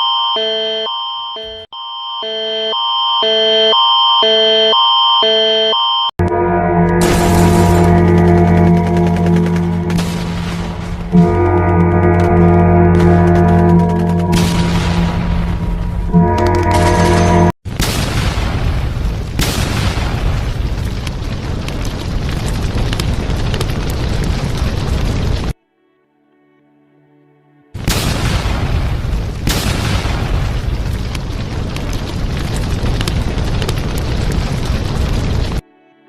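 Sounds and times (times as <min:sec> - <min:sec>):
alternating emergency alert tone: 0:00.0 - 0:17.6
low steady held tones: 0:00.0 - 0:17.6
heavy rumble: 0:06.2 - 0:17.6
explosion blasts: 0:06.2 - 0:25.6, 0:27.8 - 0:35.6.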